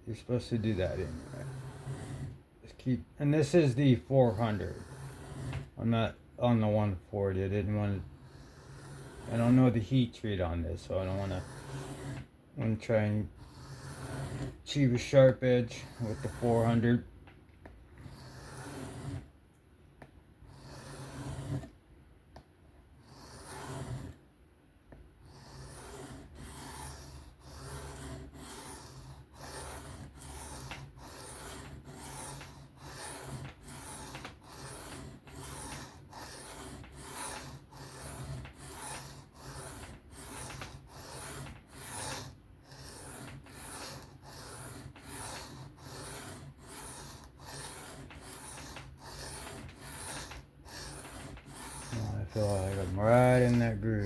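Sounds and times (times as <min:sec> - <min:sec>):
knife rasping on sharpening stone: 0:00.6 - 0:02.3, 0:03.6 - 0:05.7, 0:11.0 - 0:12.3, 0:13.4 - 0:16.9, 0:23.0 - 0:24.2, 0:25.3 - 0:54.0.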